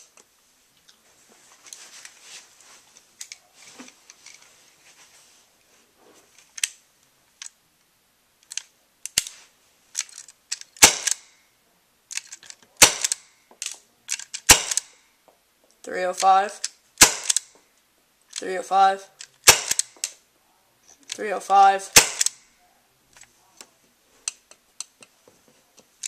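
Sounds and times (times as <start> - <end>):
air pistol shots: 10.8 - 11.3, 12.8 - 13.3, 14.4 - 15.0, 17.0 - 17.5, 19.4 - 20.1, 21.9 - 22.4.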